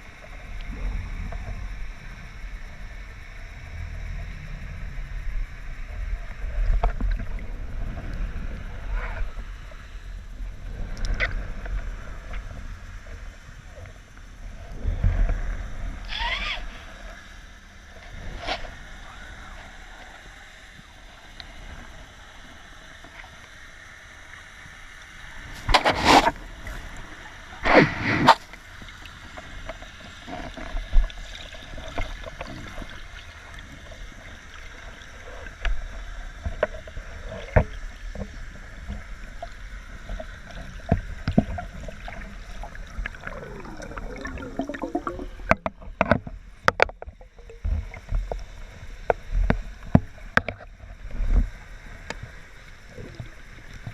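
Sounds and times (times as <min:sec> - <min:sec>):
water gurgling and sloshing: 0:00.0 - 0:53.9
loud water bursts: 0:43.2 - 0:45.6.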